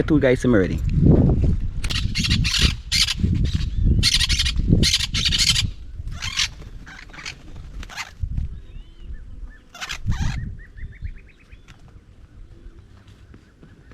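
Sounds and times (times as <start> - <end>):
parrots squawking: 1.9 - 8.2, 9.7 - 10.5.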